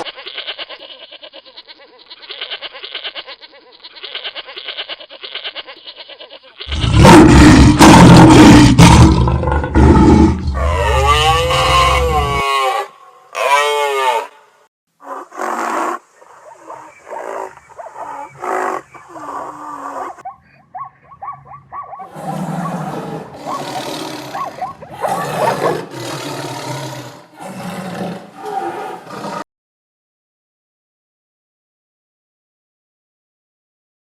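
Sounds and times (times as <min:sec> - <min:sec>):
animal roar: 0:06.7 - 0:14.3, 0:15.0 - 0:20.2, 0:21.1 - 0:29.5
animal calls rising and falling: 0:10.4 - 0:14.3, 0:15.1 - 0:29.4.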